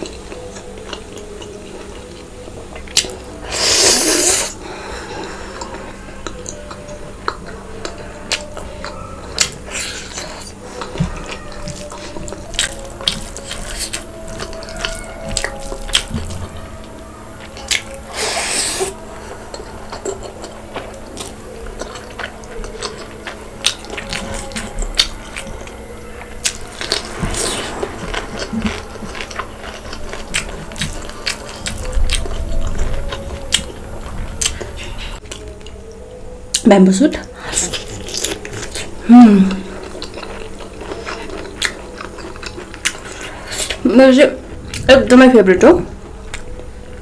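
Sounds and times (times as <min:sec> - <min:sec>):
wet chewing and mouth sounds: 0:00.0 - 0:47.0
rushes of noise: 0:26.5 - 0:30.3.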